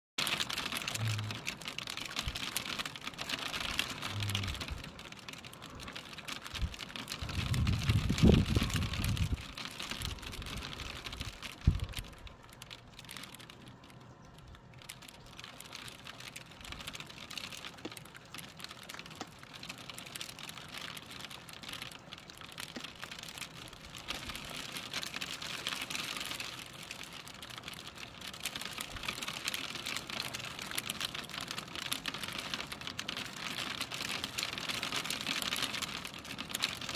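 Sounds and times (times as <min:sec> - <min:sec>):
rain pattering on hard surface: 0:00.2 - 0:36.9
low rumble: 0:00.9 - 0:01.4, 0:04.0 - 0:04.8.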